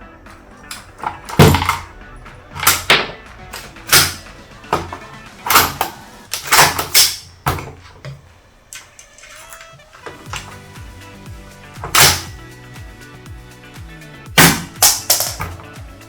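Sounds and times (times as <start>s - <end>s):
airsoft rifle shots: 0.7s - 1.9s, 2.5s - 7.7s, 11.8s - 12.4s, 14.4s - 15.6s.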